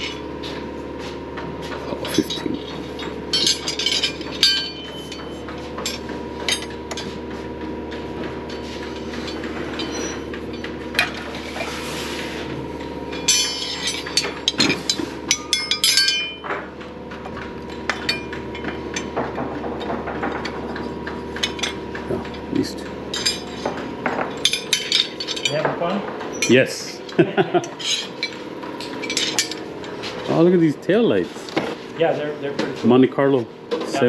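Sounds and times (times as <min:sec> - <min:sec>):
steady background hum: 0:00.0 - 0:34.0
steel wrenches clinking: 0:02.2 - 0:07.1, 0:08.9 - 0:11.7, 0:13.1 - 0:16.5, 0:17.8 - 0:19.2, 0:19.8 - 0:25.7, 0:26.3 - 0:30.0.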